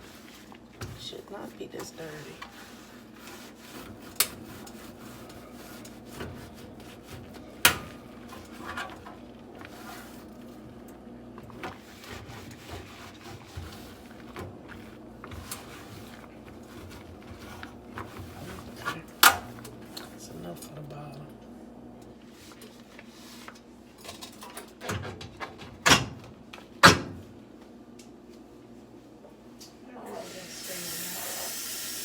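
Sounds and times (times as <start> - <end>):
scrubbing and scraping on stove: 0.0 - 20.6, 22.2 - 23.6.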